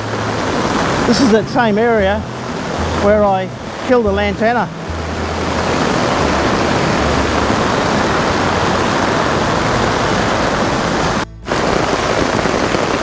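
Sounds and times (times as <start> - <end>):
creek water rushing: 0.0 - 13.0.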